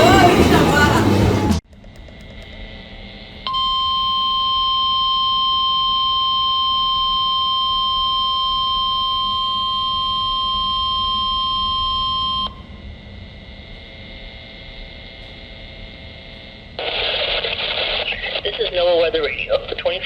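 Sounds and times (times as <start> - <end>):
high warning alarm tone: 2.3 - 17.8.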